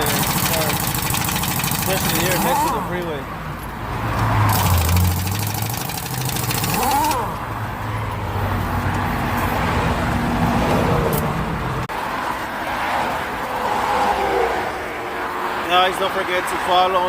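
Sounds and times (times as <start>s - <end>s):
rapid high rattle: 0.0s - 2.8s, 4.5s - 7.3s
vehicle passing by: 0.0s - 15.7s
freeway traffic passing: 0.0s - 17.0s.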